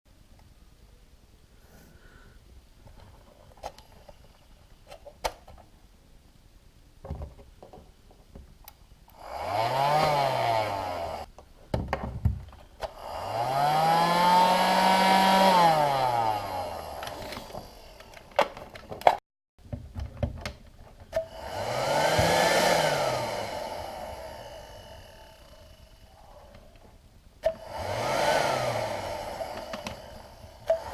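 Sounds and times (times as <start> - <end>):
vacuum cleaner motor whine: 9.2 - 11.3, 12.8 - 18.5, 21.2 - 26.7, 27.4 - 30.9
clicks and handling knocks: 11.3 - 12.9, 17.0 - 21.2.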